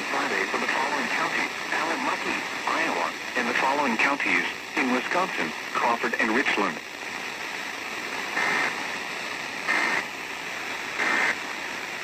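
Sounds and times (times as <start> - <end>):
radio hiss: 0.0 - 12.0.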